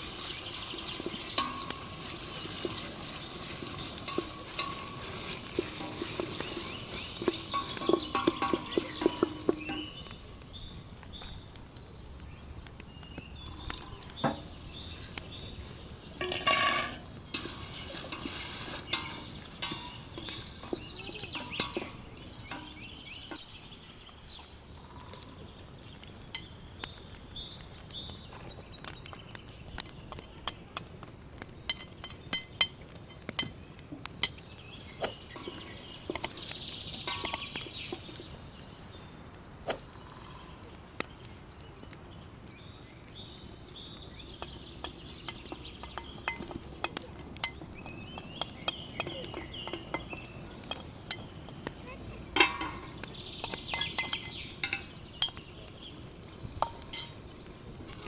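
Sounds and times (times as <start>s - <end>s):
stirring liquid: 0.0s - 10.4s, 13.6s - 23.4s, 44.4s - 58.0s
utensils and dishes clinking: 0.2s - 10.1s, 16.2s - 22.9s, 35.0s - 39.0s, 44.5s - 55.5s, 56.6s - 57.2s.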